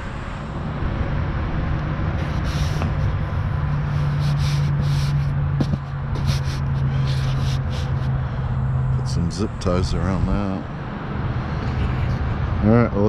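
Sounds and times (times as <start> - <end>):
scraping and rustling: 2.2 - 8.1.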